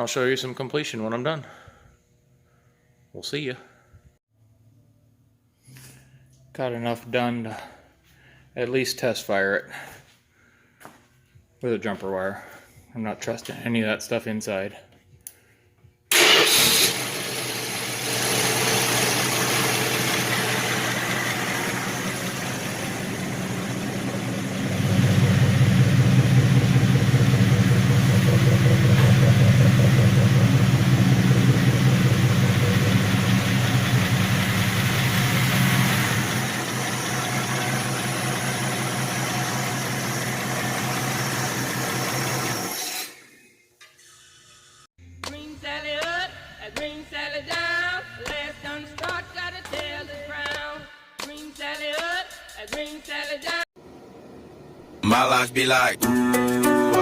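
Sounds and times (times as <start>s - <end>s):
truck engine running: 17.0s - 42.7s.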